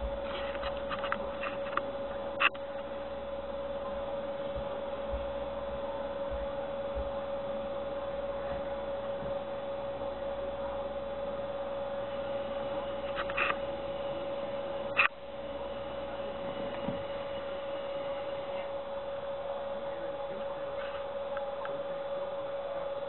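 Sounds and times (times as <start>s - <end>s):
soft low thumps: 0.0s - 0.3s, 3.8s - 7.2s
steady electrical hum: 0.0s - 23.0s
scratchy rustle: 0.2s - 1.8s.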